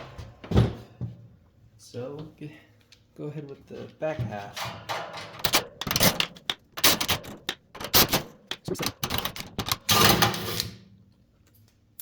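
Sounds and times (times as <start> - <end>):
rattling clatter: 4.6 - 10.4.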